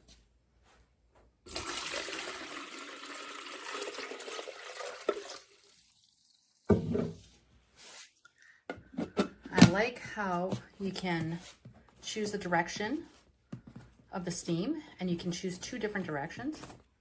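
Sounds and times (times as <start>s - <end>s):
water pouring into tank: 1.5s - 6.7s.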